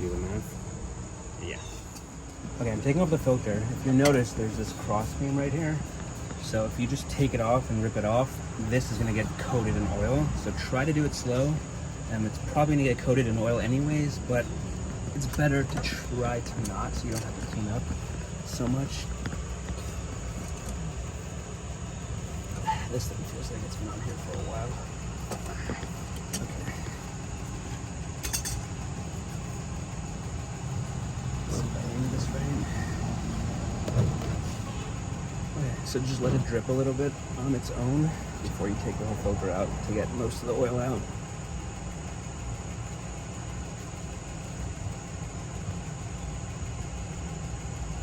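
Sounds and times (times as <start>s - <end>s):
steady low rumble: 0.0s - 48.0s
tool clinking on oil filter: 28.2s - 28.8s.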